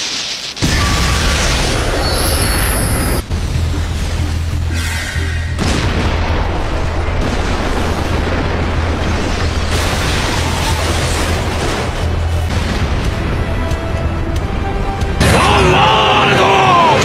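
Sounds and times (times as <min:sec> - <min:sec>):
dramatic background music: 0:00.7 - 0:17.0
booming explosive rumble: 0:02.9 - 0:15.9.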